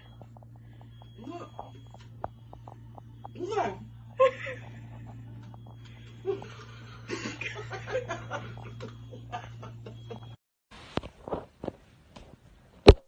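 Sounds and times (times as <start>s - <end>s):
low hum: 0.0s - 10.4s
people chuckling and laughing: 4.2s - 10.4s.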